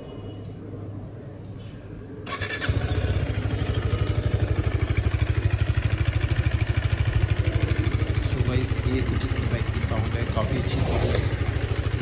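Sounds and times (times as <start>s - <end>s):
motorcycle starter burst: 2.3s - 3.4s
motorcycle engine idling: 2.3s - 12.0s.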